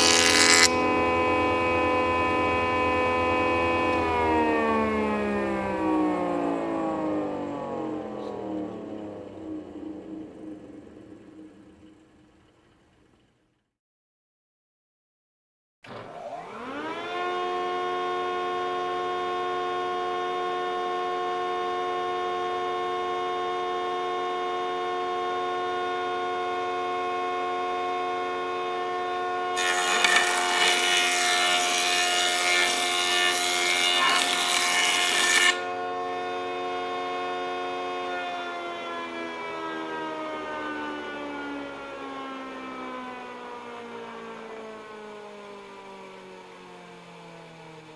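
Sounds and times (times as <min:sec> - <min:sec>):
board cutting on jointer: 0:00.0 - 0:06.8, 0:15.8 - 0:39.4
jointer motor whining: 0:00.0 - 0:07.0, 0:15.9 - 0:38.3.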